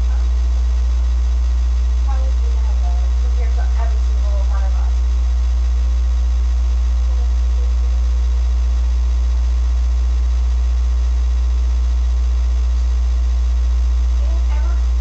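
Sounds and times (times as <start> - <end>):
loud electrical hum: 0.0 - 15.0
faint voice: 7.0 - 8.2, 14.2 - 15.0.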